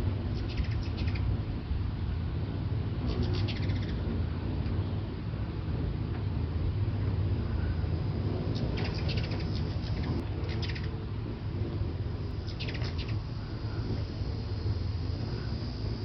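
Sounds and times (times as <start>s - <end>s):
hummingbird wings humming: 0.0s - 16.0s
rapid chittering bird calls: 0.1s - 1.4s, 3.0s - 4.2s, 7.5s - 11.2s, 12.0s - 16.0s.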